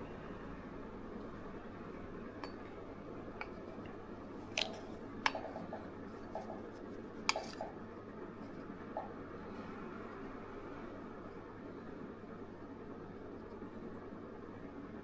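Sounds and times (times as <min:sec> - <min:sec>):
clicks of small objects handled: 0:03.4 - 0:05.4.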